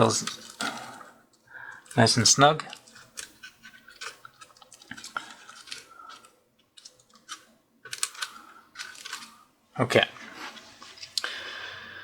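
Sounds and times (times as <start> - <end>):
cables and plastic parts rustling: 0.0 - 11.6.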